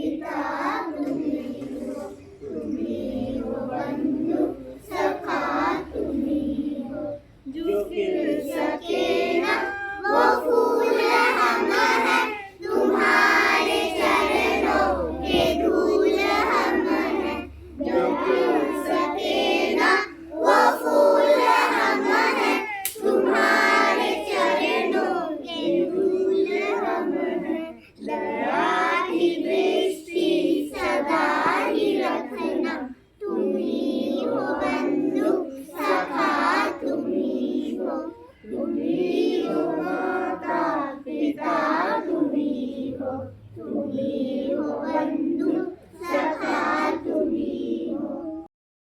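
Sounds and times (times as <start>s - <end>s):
children singing in unison: 0.0s - 48.5s.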